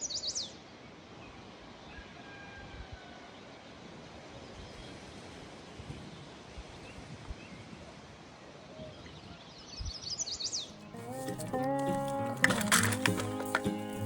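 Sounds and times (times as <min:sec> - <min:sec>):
outdoor background noise: 0:00.0 - 0:14.0.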